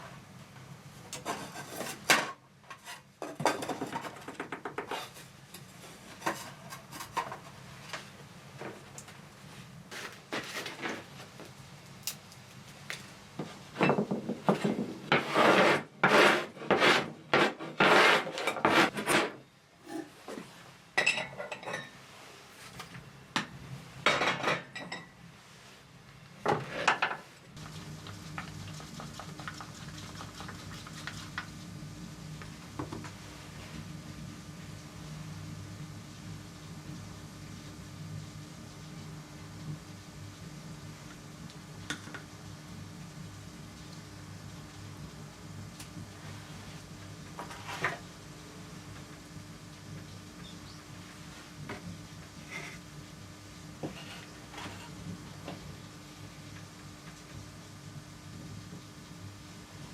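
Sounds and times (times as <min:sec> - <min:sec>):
hard objects scraping and clattering: 0:14.1 - 0:20.2.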